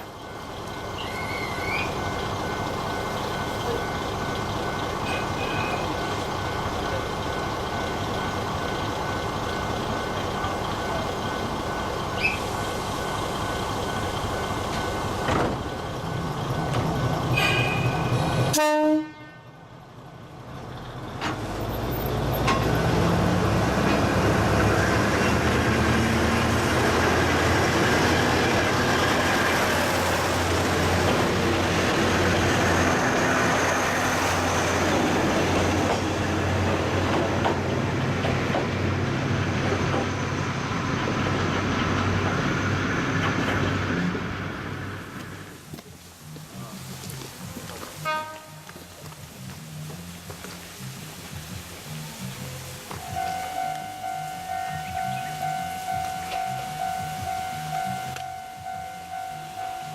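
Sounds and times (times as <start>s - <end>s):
diesel railcar engine: 0.0s - 59.9s
train horn toot: 17.3s - 19.6s, 48.0s - 48.8s, 53.0s - 59.9s.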